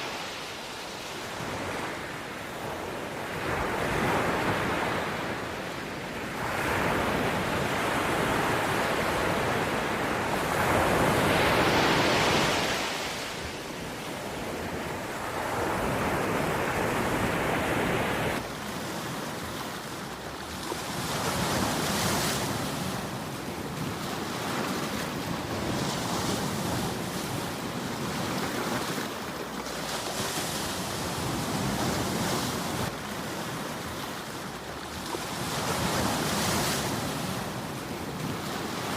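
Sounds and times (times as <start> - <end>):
waves breaking on rocky shore: 0.0 - 38.9.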